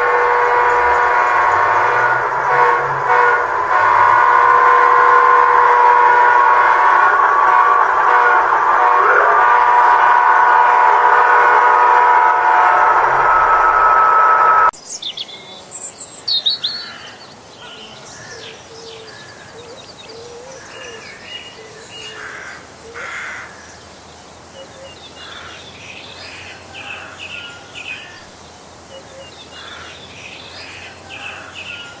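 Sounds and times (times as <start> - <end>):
birds chirping: 0.0 - 6.4
model train horn chord: 0.0 - 14.7.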